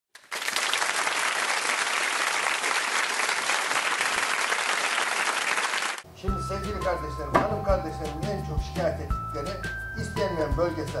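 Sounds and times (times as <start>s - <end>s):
audience applause: 0.2s - 6.0s.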